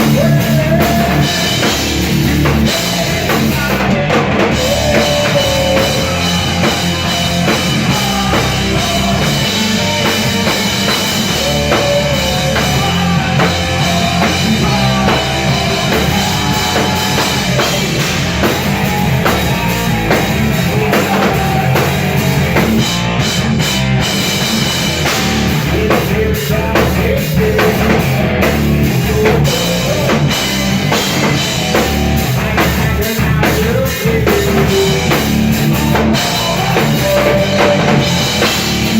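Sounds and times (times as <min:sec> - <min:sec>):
distorted guitar: 0:00.0 - 0:38.9
drum kit beat: 0:00.0 - 0:38.9
rock band playing live: 0:00.0 - 0:38.9.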